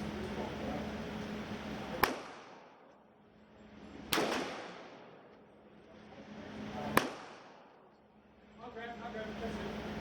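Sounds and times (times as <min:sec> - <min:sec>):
gunshots with echo: 0:04.1 - 0:05.1.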